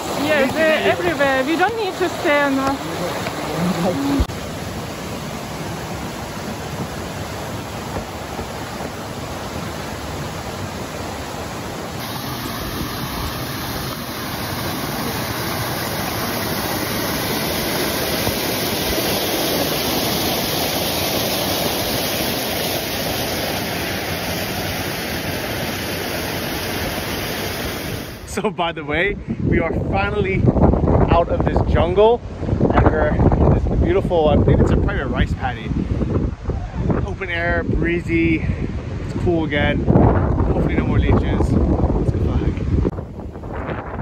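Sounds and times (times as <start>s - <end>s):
steady rushing noise: 0.0s - 28.4s.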